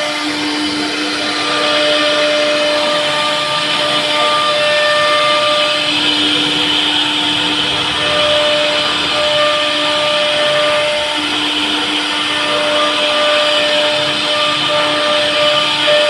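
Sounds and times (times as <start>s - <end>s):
humming tones: 0.0s - 16.0s
router motor whine: 0.0s - 16.0s.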